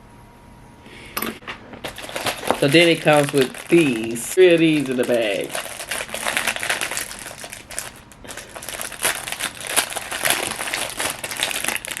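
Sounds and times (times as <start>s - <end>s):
plastic bag crinkling: 1.8s - 12.0s.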